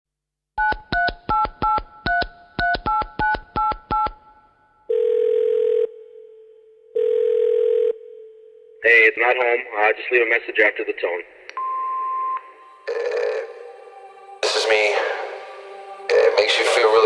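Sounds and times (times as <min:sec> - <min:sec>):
telephone ringing tone: 0:04.9 - 0:09.0, 0:11.6 - 0:13.7.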